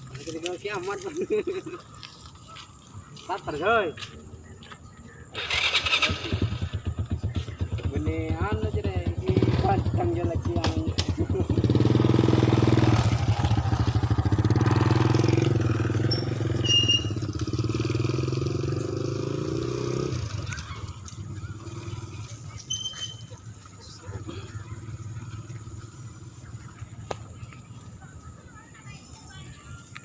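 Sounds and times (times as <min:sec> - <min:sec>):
small motorcycle engine running: 0:05.4 - 0:27.0.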